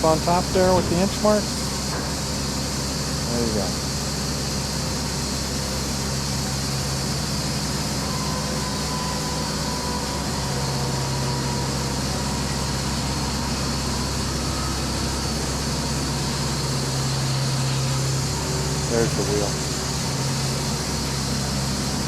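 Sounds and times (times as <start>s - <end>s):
band sawmill humming: 0.0s - 22.0s.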